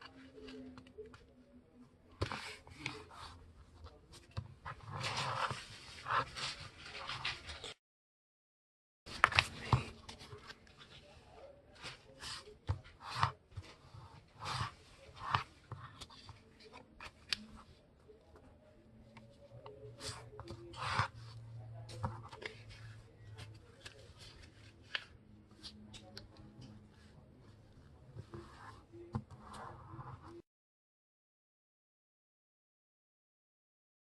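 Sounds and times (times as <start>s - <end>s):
paper being folded: 22.2s - 27.1s.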